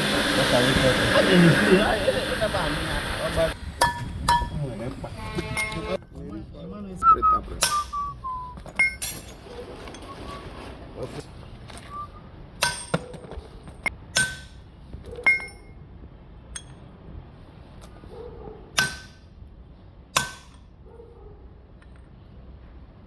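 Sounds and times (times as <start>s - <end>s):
metal tools clinking together: 8.6s - 10.6s.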